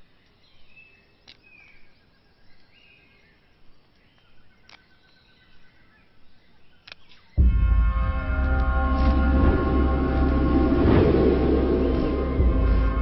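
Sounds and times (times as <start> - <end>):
bird calls: 0.0 - 7.4
sharp clicks: 6.8 - 7.3.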